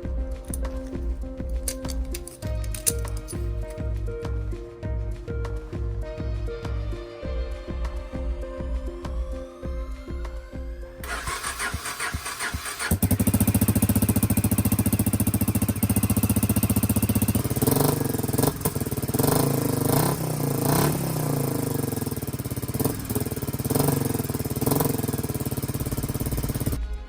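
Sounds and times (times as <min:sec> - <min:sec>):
motorcycle engine idling: 0:11.0 - 0:26.8
motorcycle engine revving: 0:11.0 - 0:26.8.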